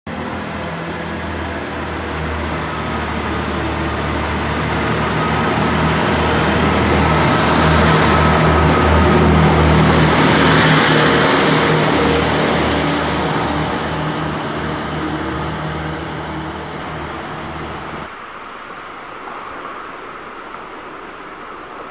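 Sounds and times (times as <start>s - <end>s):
train rolling past: 0.1s - 18.1s
steady low hum: 12.8s - 18.1s.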